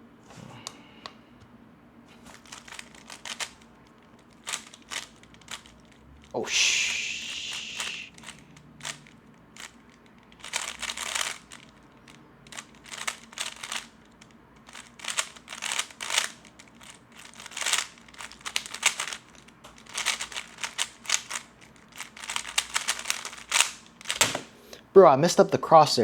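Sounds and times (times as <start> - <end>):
puzzle cube turning clicks: 2.3 - 6.0, 6.9 - 24.4.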